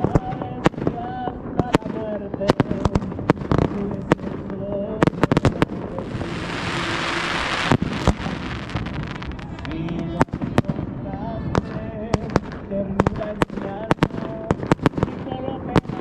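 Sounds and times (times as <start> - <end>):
fireworks banging: 0.0 - 16.0
voices: 0.0 - 16.0
loud rushing hiss: 4.4 - 10.0.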